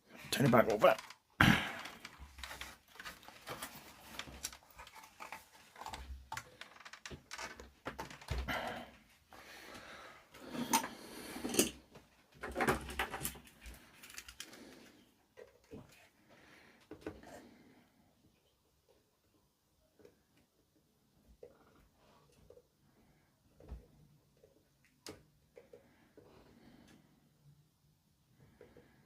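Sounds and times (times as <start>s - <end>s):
handling clicks and scraping: 0.4s - 8.3s, 12.4s - 15.7s.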